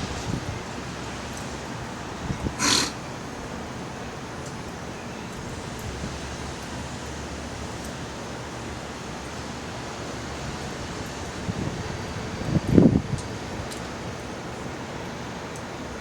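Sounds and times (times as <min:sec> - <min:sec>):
faint firewood crackles: 0:00.0 - 0:08.0
wood fire hissing: 0:00.9 - 0:03.4
wind on microphone: 0:11.3 - 0:13.7.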